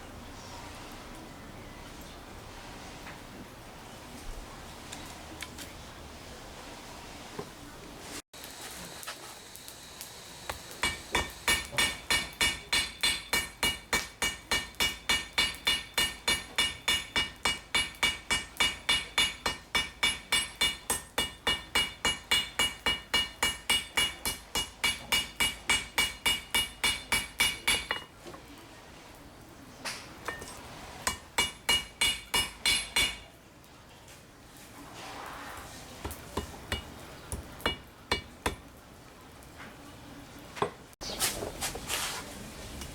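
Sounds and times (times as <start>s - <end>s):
hammer striking steel on anvil: 10.5s - 28.1s, 30.2s - 33.4s, 36.4s - 38.6s.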